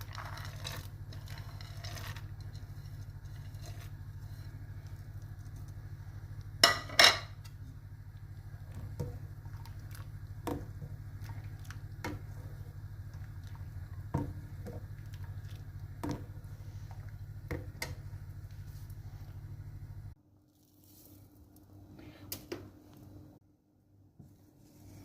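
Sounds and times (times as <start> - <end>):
steady low hum: 0.0 - 25.0
kitchen utensils clinking: 6.6 - 7.4.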